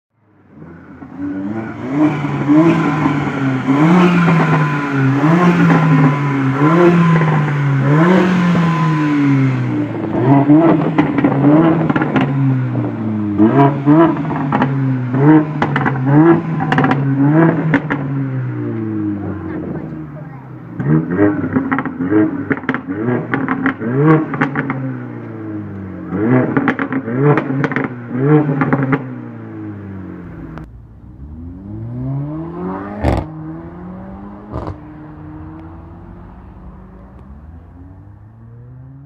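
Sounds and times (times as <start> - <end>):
car engine revving: 0.3 - 39.0
exhaust crackles and pops: 9.9 - 18.1, 20.8 - 29.1, 30.3 - 33.3, 33.9 - 38.2.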